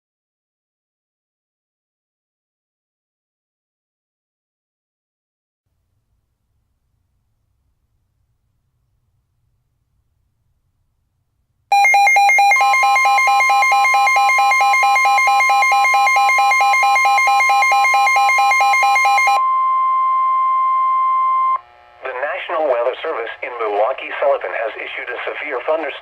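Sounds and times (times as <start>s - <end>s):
pulsing electronic alarm beep: 11.7s - 21.6s
steady alarm tone: 11.7s - 23.0s.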